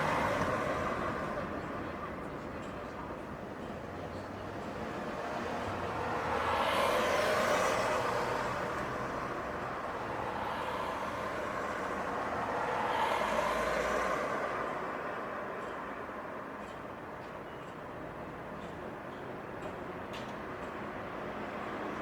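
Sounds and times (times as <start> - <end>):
vehicles passing: 0.0 - 16.8.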